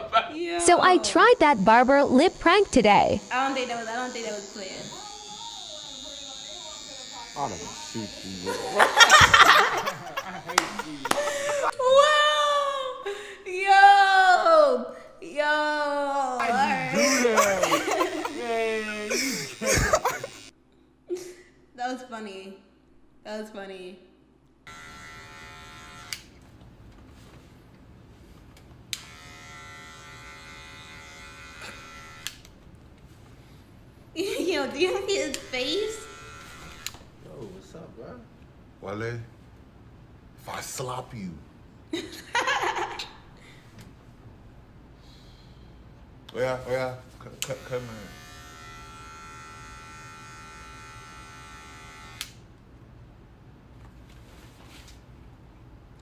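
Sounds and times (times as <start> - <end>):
electric hair clippers buzzing: 1.8 - 9.0, 9.7 - 11.7, 16.4 - 20.5, 24.7 - 26.4, 28.9 - 32.6, 34.8 - 37.2, 47.4 - 52.5.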